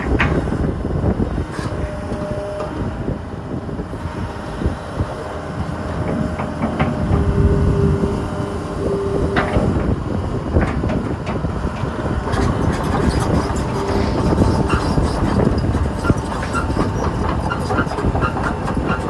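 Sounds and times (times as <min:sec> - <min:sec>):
excavator engine rumble: 0:00.0 - 0:19.0
metallic clanks and knocks: 0:06.0 - 0:07.3.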